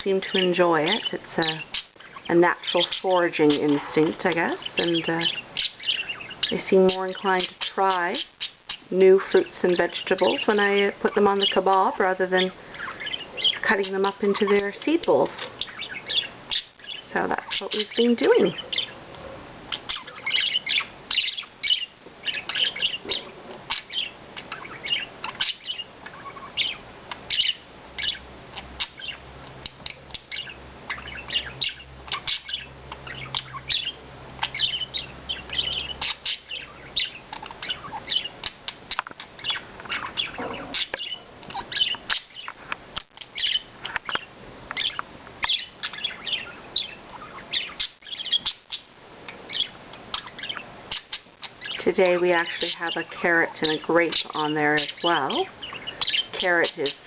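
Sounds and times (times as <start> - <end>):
budgerigars chirping and chattering: 0.0 - 57.0
faint low hum: 0.0 - 57.0.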